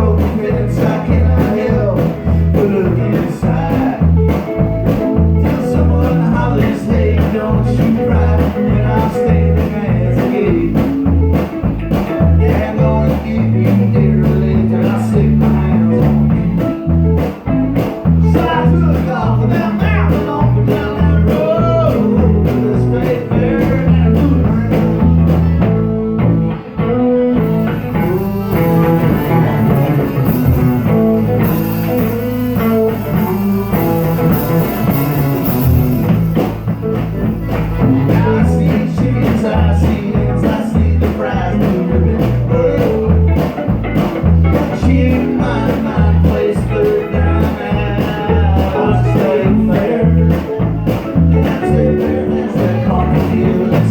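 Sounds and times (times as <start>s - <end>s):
person singing: 0.0s - 11.4s, 12.2s - 17.2s, 18.1s - 27.4s, 37.4s - 43.6s, 44.2s - 53.9s
bass and drum beat: 0.0s - 53.9s
guitar: 0.0s - 53.9s.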